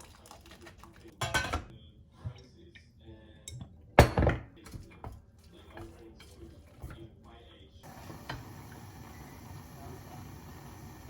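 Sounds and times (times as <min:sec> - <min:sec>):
dishes and cutlery clinking: 0:00.0 - 0:02.5, 0:03.4 - 0:07.1
dishes clattering: 0:01.2 - 0:01.7, 0:03.5 - 0:05.2.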